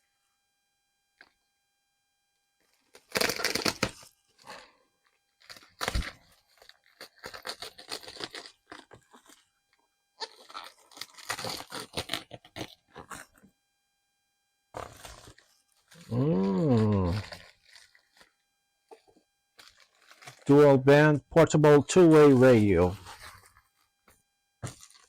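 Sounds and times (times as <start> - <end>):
packaging crinkling and tearing: 2.7 - 4.6, 5.3 - 9.5, 10.2 - 13.4, 14.8 - 20.5, 22.0 - 23.9, 24.6 - 25.0.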